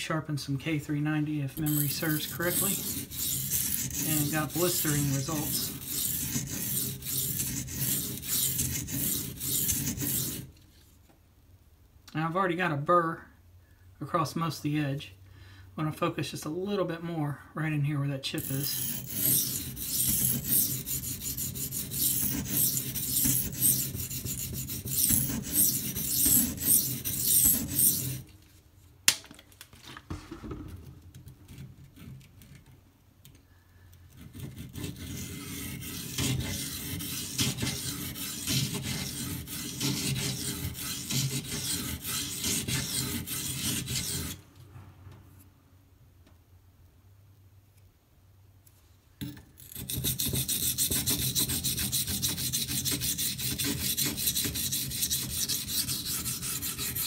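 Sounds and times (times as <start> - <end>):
knife scraping on whetstone: 1.6 - 10.5, 18.4 - 28.3, 34.1 - 44.4, 49.6 - 57.0.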